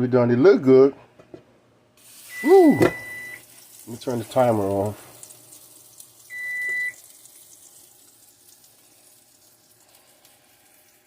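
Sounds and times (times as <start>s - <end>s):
faint steady hiss: 1.9s - 11.0s
appliance electronic beep: 2.3s - 3.5s, 6.3s - 7.0s.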